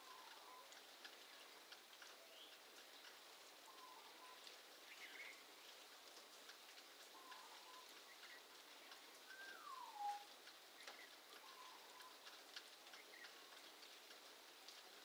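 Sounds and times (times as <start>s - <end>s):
patter of drips: 0.0s - 15.0s
faint short bird calls: 7.2s - 7.9s, 9.3s - 10.3s.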